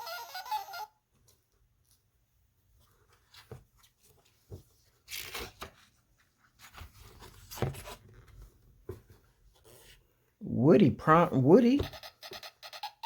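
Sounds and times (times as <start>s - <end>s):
book pages turning: 2.8s - 10.0s.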